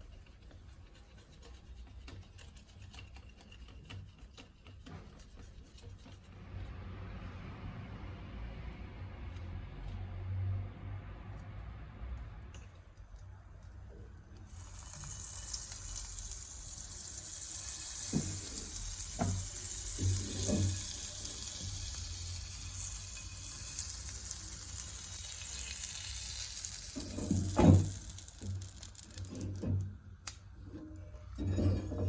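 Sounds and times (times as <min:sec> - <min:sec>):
batter sizzling in a pan: 0:14.4 - 0:29.8.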